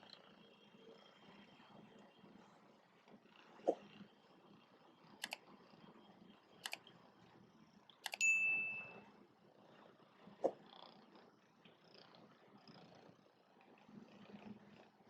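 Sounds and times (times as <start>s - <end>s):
sharp double clicks: 8.0s - 8.2s
bright metallic ding: 8.1s - 9.0s.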